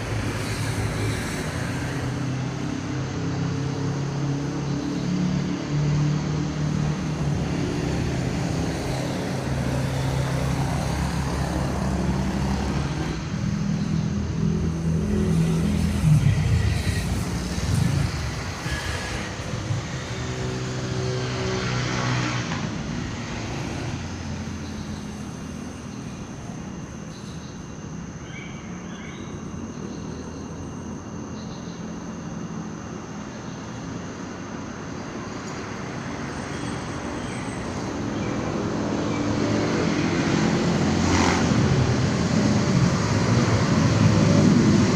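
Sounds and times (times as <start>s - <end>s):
vehicle engine droning: 0.0s - 27.9s
traffic rumble: 0.0s - 44.9s.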